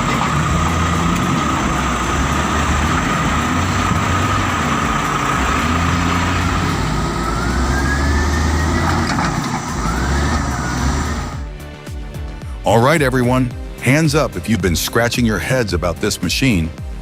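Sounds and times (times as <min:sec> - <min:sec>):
heavy machine engine rumbling: 0:00.0 - 0:11.5
high engine whine: 0:00.0 - 0:12.3.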